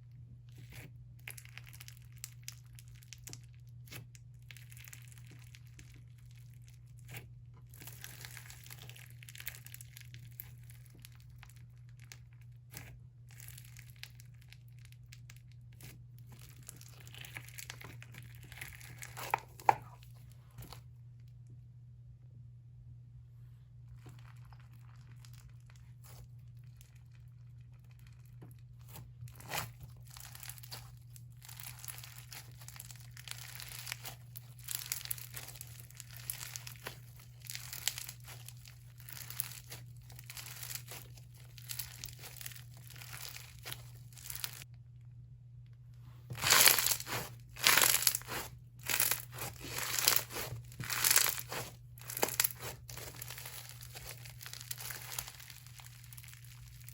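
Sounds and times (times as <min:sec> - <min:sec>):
faint steady hum: 0:00.0 - 0:56.9
slime squished with crunchy beads: 0:00.4 - 0:20.8, 0:23.9 - 0:44.7, 0:46.2 - 0:56.9.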